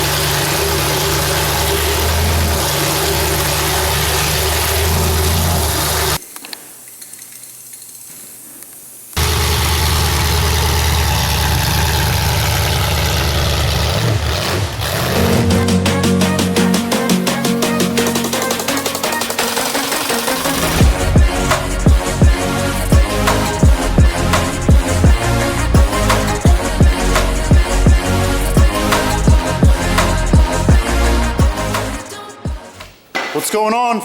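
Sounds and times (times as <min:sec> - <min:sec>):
car engine idling roughly: 0:00.0 - 0:06.2, 0:09.2 - 0:15.4.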